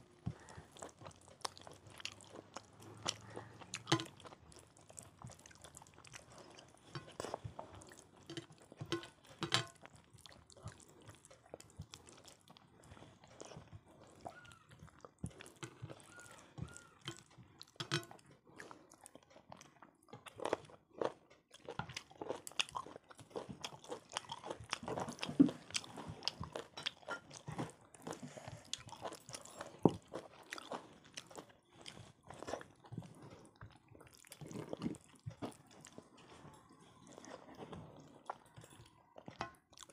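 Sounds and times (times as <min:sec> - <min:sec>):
people chewing and crunching food: 0:00.0 - 0:39.9.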